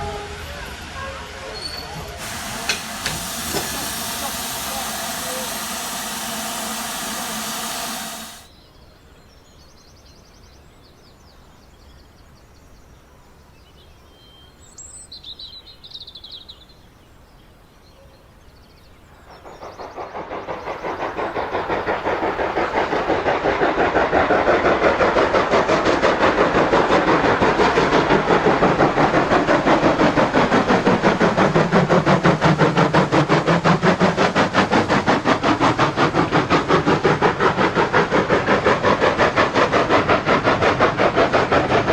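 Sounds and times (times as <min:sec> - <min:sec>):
model train clattering: 0:02.2 - 0:08.5
model train whine: 0:02.2 - 0:08.5.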